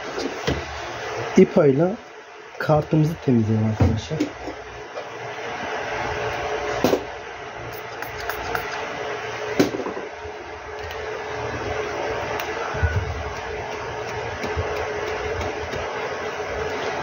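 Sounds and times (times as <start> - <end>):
small fan whirring: 0.0 - 17.0
sharp clicks: 7.8 - 8.8.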